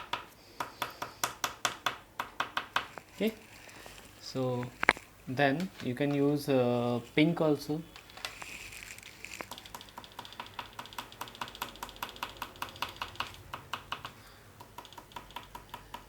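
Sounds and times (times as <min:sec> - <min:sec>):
pastel tapping on paper: 0:00.0 - 0:03.1, 0:09.4 - 0:16.0.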